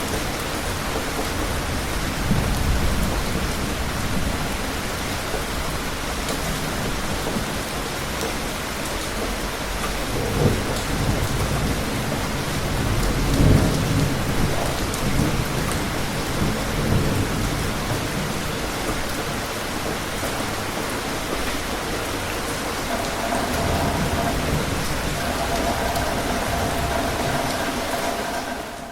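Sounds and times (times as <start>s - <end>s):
steady rain: 0.0s - 28.9s
distant thunder rumbling: 22.1s - 28.9s
faint steady hum: 22.9s - 28.9s.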